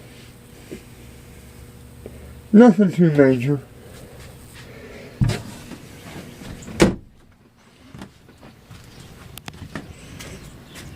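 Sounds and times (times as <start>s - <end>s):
knocks: 5.2s - 5.5s.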